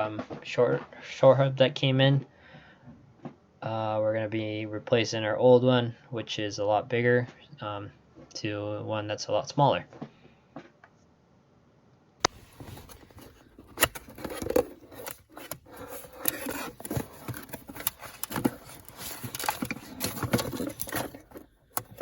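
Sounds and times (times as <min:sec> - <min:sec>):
scraping and rustling: 0:12.3 - 0:22.0
small parts clicking and tapping: 0:12.8 - 0:22.0.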